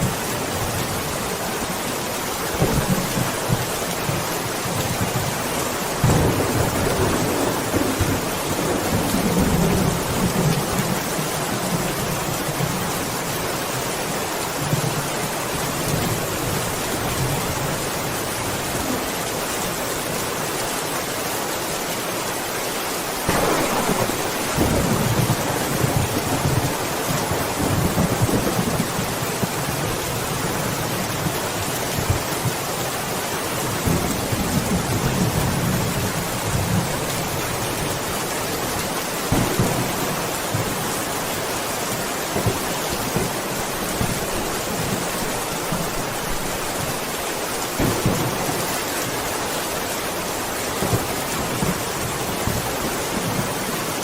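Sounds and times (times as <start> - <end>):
heavy rain: 0.0 - 54.0
rolling thunder: 6.0 - 11.1, 23.2 - 29.5, 39.3 - 41.2.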